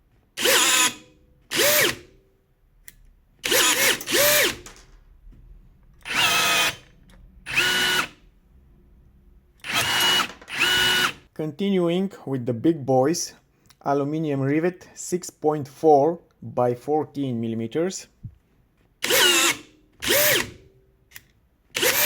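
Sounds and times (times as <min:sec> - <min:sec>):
rivet gun motor whirring: 0:00.4 - 0:02.1, 0:03.4 - 0:04.7, 0:06.0 - 0:08.2, 0:09.6 - 0:11.2, 0:19.0 - 0:20.6, 0:21.8 - 0:22.0.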